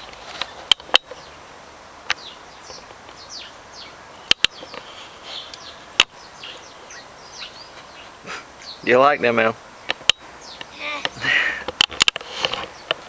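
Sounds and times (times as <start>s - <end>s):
birds chirping: 0.0s - 13.0s
sharp clicks or knocks: 11.0s - 13.0s.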